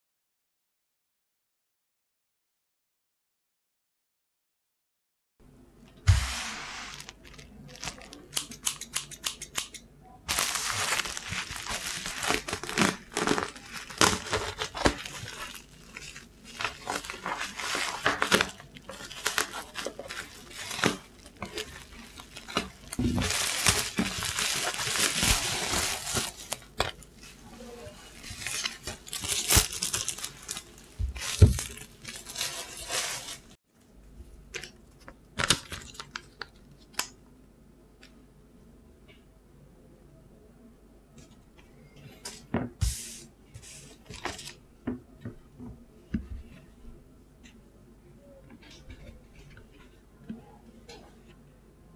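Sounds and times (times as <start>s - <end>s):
packaging tearing and crinkling: 6.2s - 27.0s, 28.1s - 33.6s, 35.4s - 37.1s.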